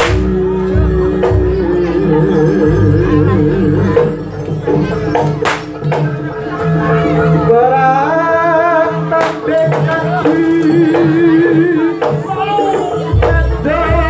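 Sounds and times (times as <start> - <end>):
wavering reed pipe melody: 0.0 - 8.4.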